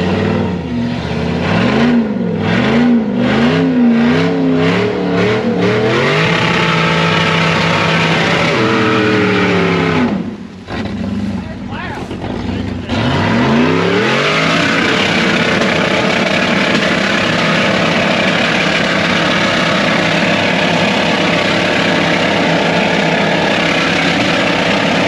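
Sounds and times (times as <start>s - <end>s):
engine revving high: 0.0s - 25.0s
steady rush of noise: 0.0s - 25.0s.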